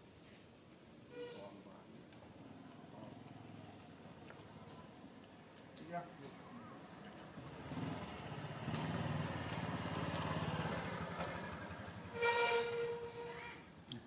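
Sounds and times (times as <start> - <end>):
vehicle rumbling past: 6.4 - 13.8
short flat horn blast: 12.1 - 13.5.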